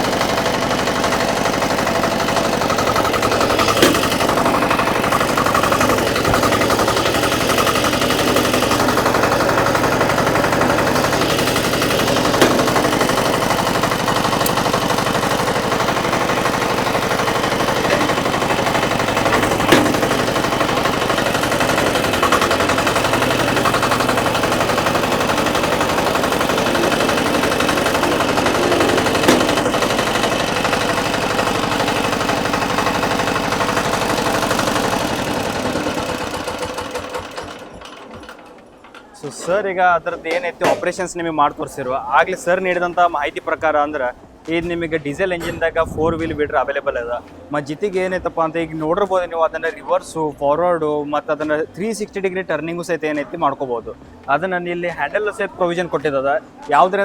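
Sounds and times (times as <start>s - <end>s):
sharp clacks: 0.0s - 41.1s
small engine chugging: 0.0s - 44.1s.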